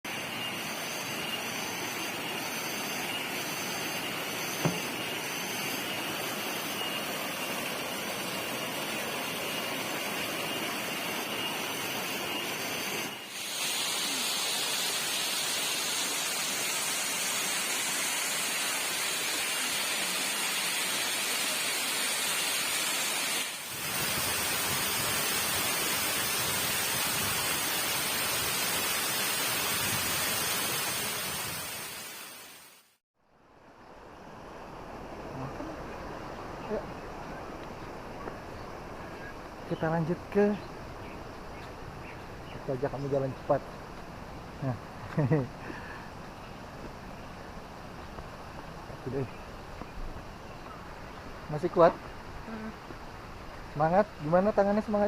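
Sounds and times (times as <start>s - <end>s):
waterfall rushing: 4.4s - 32.9s.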